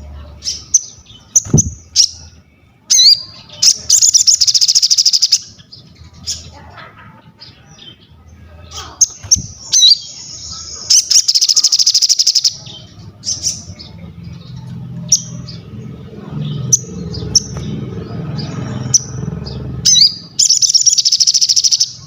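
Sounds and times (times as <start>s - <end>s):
sharp high bird chirps: 0.4s - 6.5s, 8.8s - 15.7s, 16.4s - 22.0s
songbird singing fast high notes: 2.9s - 6.4s, 8.9s - 14.4s, 16.4s - 22.0s.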